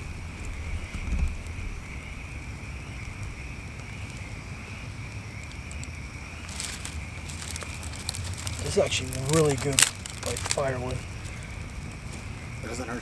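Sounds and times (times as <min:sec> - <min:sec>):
kindling crackling and snapping: 0:00.0 - 0:13.0
low outdoor rumble: 0:00.0 - 0:13.0.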